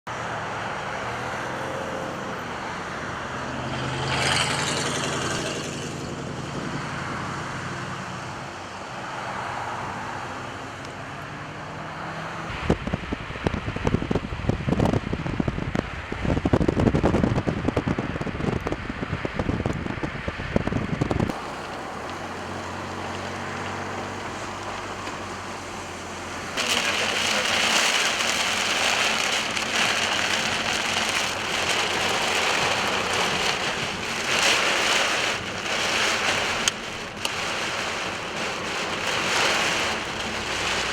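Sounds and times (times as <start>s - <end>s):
strong wind gusts: 12.5s - 40.9s
rain pelting: 21.2s - 40.9s
vehicle engine idling: 21.3s - 34.2s.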